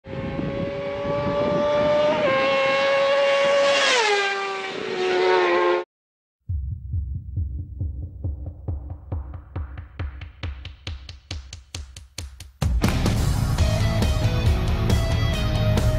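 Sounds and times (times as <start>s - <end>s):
electronic music thumping beat: 6.5s - 14.0s.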